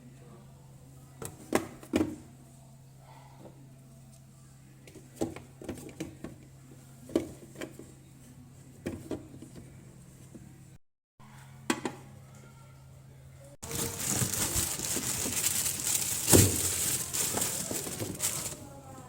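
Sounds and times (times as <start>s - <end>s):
plastic containers knocking and clacking: 13.6s - 18.6s.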